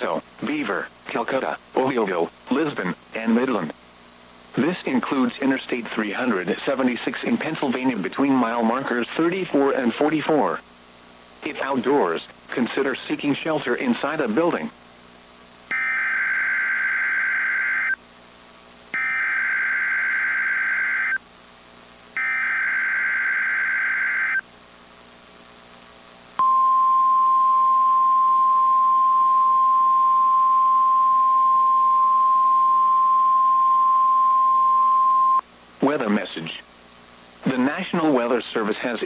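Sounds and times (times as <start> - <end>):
loud steady high beep: 15.7 - 18.0, 19.0 - 21.2, 22.2 - 24.4, 26.4 - 35.4
warbling digital data tones: 15.7 - 18.0, 19.0 - 21.2, 22.2 - 24.4.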